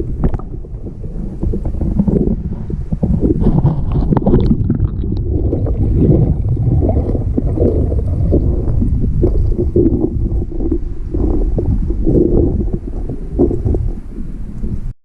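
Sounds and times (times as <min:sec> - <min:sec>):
wind buffeting microphone: 0:00.0 - 0:14.9.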